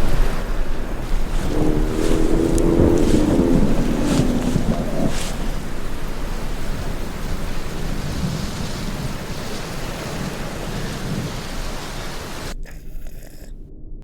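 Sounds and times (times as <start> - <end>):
dense rain-like hiss: 0.0 - 12.6
deep continuous rumble: 0.0 - 14.0.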